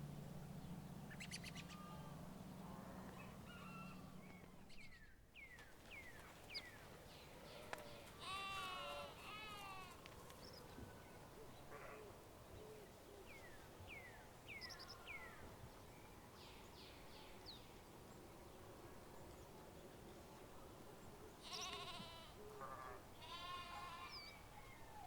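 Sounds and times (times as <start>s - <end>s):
bird chirping: 0.5s - 8.1s
goat bleating: 8.1s - 10.0s, 21.4s - 24.2s.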